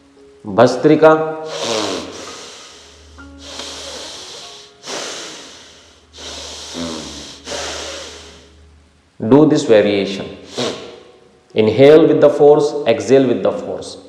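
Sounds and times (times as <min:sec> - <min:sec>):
faint background music: 0:00.0 - 0:14.0
man breathing forcefully: 0:01.5 - 0:08.5, 0:10.4 - 0:10.9.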